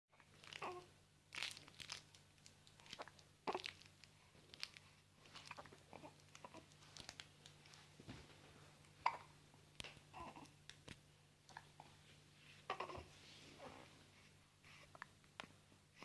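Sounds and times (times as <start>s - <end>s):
small clicks and rustles: 1.4s - 8.5s
baby hiccuping: 9.0s - 9.3s.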